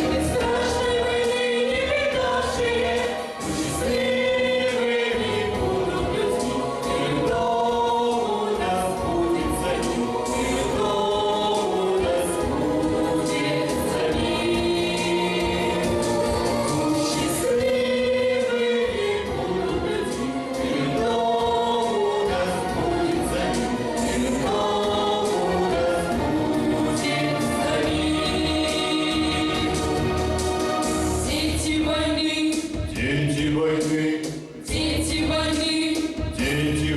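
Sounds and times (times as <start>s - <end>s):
choir singing slow song: 0.0s - 32.4s
musical accompaniment: 0.0s - 36.9s.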